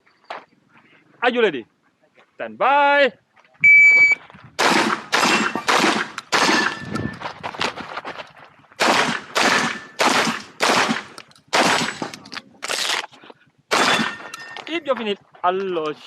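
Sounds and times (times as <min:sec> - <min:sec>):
shotgun shots: 0:04.6 - 0:06.8, 0:08.8 - 0:12.2, 0:13.7 - 0:14.3.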